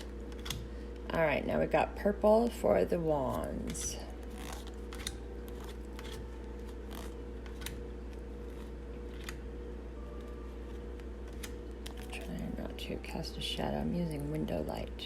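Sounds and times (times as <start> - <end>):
low electrical hum: 0.0 - 15.0
cards clicking and sliding: 3.6 - 9.5, 10.1 - 12.2.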